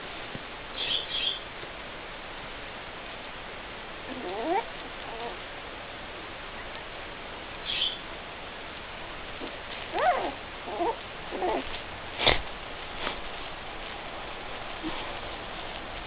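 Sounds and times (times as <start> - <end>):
puppies whining and squeaking: 4.1 - 5.4, 9.9 - 11.7.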